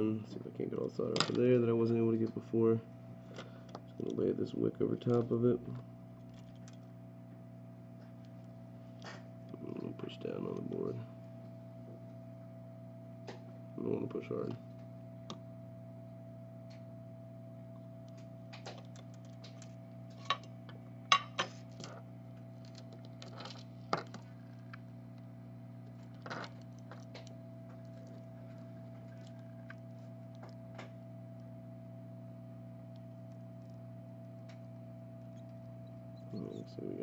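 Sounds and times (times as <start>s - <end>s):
steady electrical hum: 0.0s - 37.0s
metal tools tapping circuit board: 18.6s - 21.5s.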